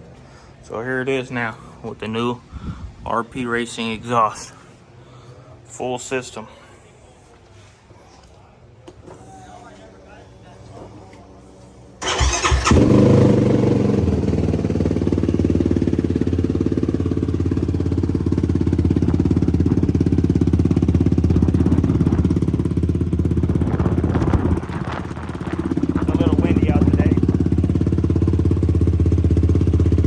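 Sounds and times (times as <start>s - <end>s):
quad bike engine idling: 12.0s - 30.0s.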